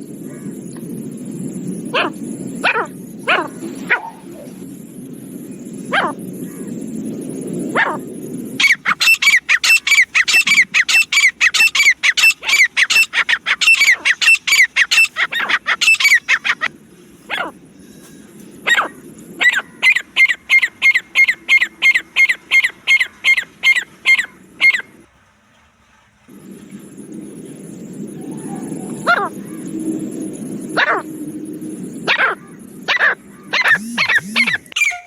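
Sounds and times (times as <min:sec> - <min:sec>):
bird calling in sharp notes: 0:08.6 - 0:16.7, 0:32.4 - 0:35.0.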